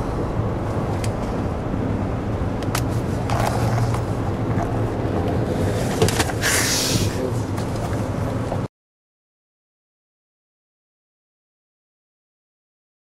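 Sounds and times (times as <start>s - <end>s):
car cabin road rumble: 0.0s - 8.7s
short hiss: 6.4s - 7.3s.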